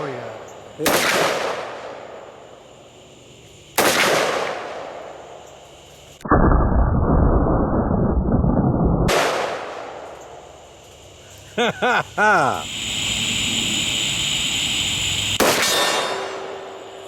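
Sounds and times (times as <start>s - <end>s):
blast with muffled rumble: 6.2s - 9.4s.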